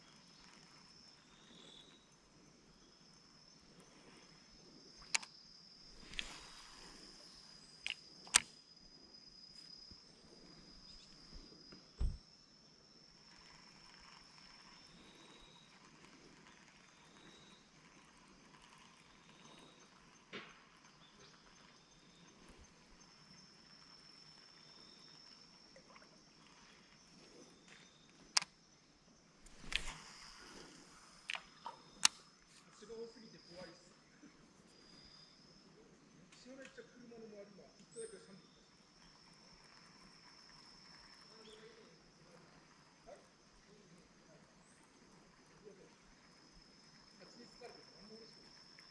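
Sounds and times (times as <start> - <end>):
insect short chirps: 0.0 - 48.9
insects trilling: 0.0 - 48.9
sharp clicks: 5.0 - 7.0, 7.8 - 8.6, 29.4 - 32.3
dull thump: 12.0 - 12.2.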